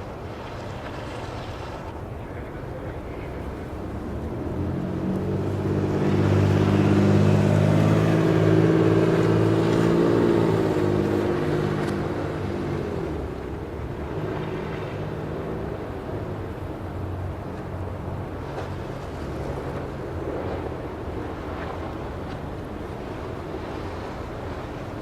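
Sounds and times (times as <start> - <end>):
vehicle engine passing by: 4.0 - 12.8.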